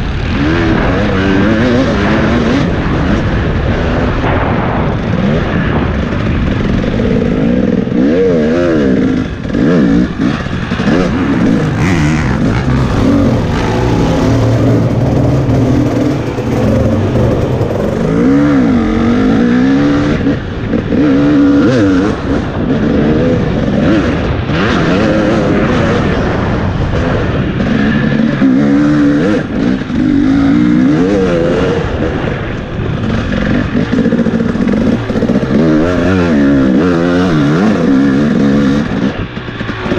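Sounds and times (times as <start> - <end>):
dirt bike engine revving: 0.0 - 39.9.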